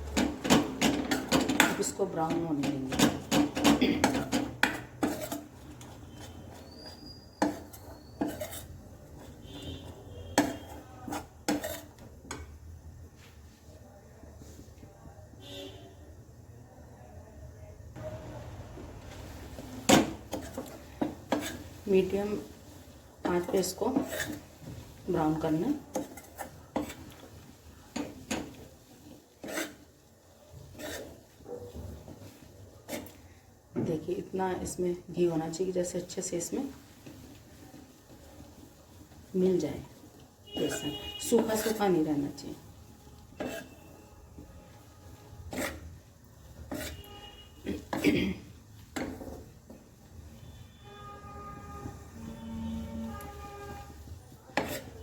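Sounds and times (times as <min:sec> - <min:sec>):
spatula knocking against pan: 0:00.0 - 0:05.4
spoon clinking and scraping pan: 0:00.0 - 0:12.6, 0:19.5 - 0:33.3, 0:35.5 - 0:55.0.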